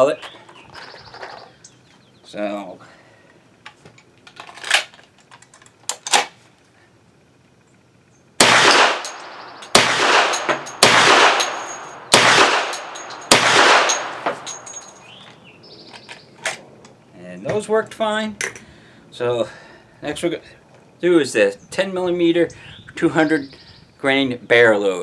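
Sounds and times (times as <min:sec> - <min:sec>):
pistol shots with echo: 0:08.4 - 0:14.7.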